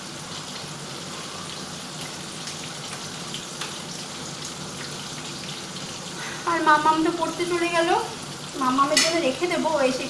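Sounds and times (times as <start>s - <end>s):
food deep-frying in oil: 0.0s - 10.0s.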